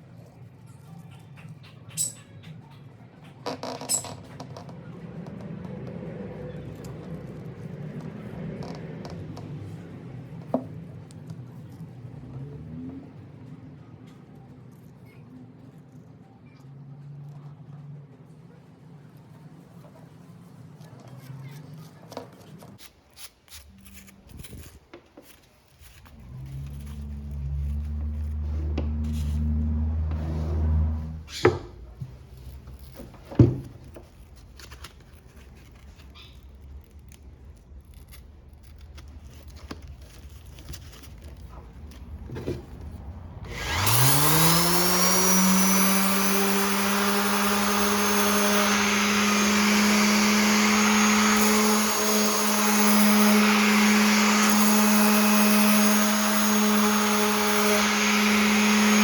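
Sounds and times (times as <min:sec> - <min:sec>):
electric orbital sander whining: 0:26.1 - 0:31.3, 0:43.4 - 0:59.0.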